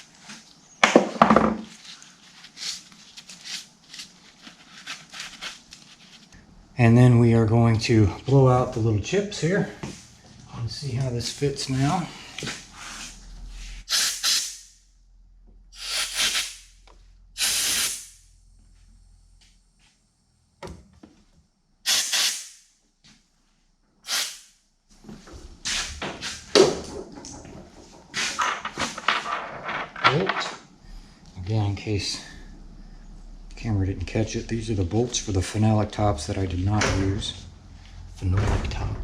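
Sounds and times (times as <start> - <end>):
compressed air blasts: 13.8 - 14.8, 15.7 - 16.8, 17.4 - 18.3, 21.8 - 22.7, 24.0 - 24.6
clattering handling noise: 25.0 - 30.8.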